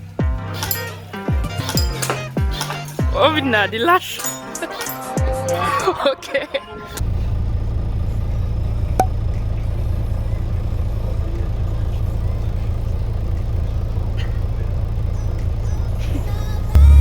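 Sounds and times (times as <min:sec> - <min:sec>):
vehicle engine rumble: 0:06.8 - 0:17.0.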